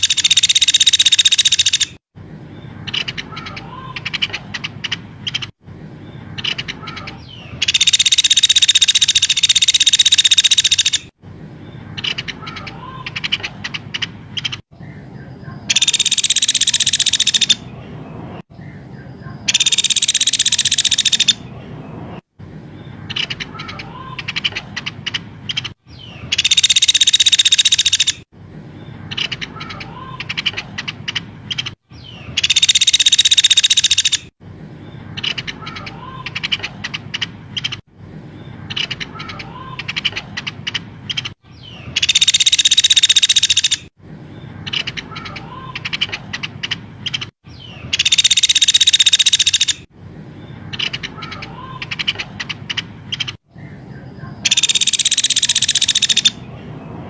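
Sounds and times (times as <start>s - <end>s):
clicking bird chirps: 0.0s - 2.0s, 2.9s - 5.5s, 6.4s - 11.1s, 15.7s - 17.6s, 19.4s - 21.4s, 23.1s - 28.2s, 32.4s - 34.3s, 42.0s - 43.9s, 44.7s - 49.9s, 54.2s - 56.4s
rapid high-pitched bird chatter: 0.0s - 57.0s.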